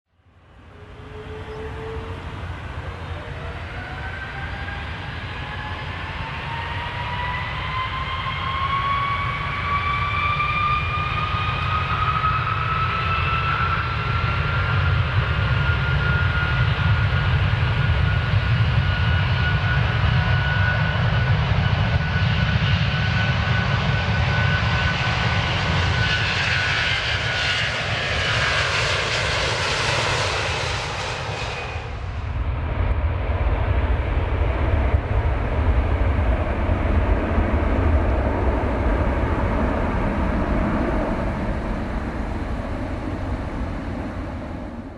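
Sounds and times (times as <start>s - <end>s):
airplane engine whine: 0.1s - 44.9s
deep continuous rumble: 13.8s - 44.9s.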